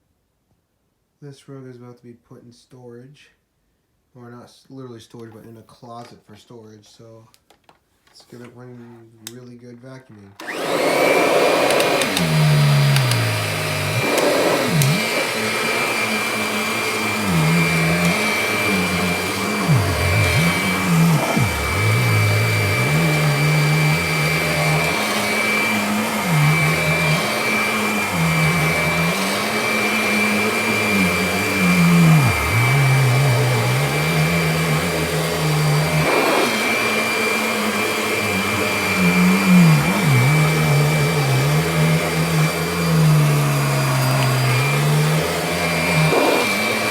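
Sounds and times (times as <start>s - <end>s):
vacuum cleaner running: 10.4s - 46.9s.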